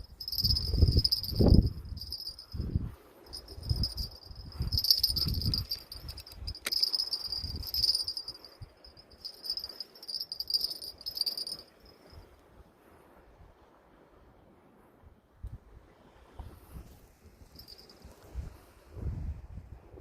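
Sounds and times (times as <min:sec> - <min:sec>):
insect chirping trill: 0:00.0 - 0:12.2, 0:17.5 - 0:18.2.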